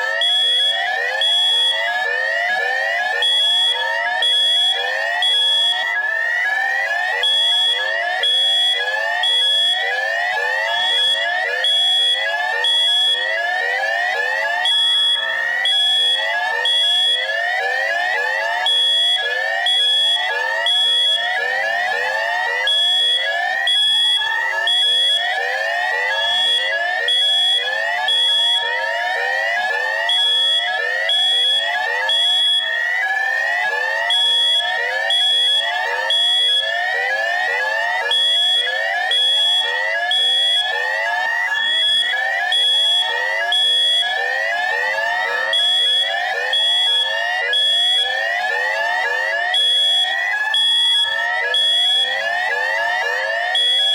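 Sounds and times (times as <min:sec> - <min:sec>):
electronic alarm whoops: 0:22.4 - 0:53.9.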